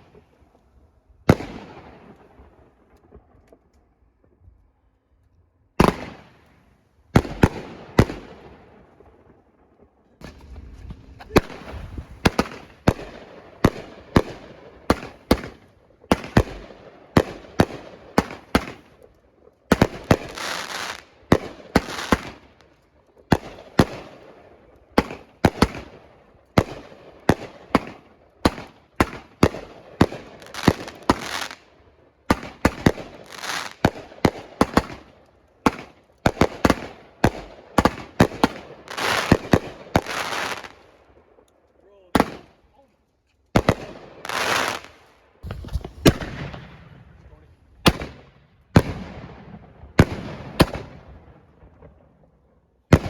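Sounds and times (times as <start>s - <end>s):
fireworks bangs: 1.2s - 3.6s, 5.8s - 9.4s, 10.2s - 19.0s, 19.7s - 22.6s, 23.3s - 31.7s, 32.3s - 41.0s, 43.6s - 52.1s
fireworks hissing crackle: 10.2s - 13.6s, 19.9s - 22.4s, 30.2s - 31.7s, 32.6s - 34.9s, 38.8s - 40.9s, 44.2s - 46.9s.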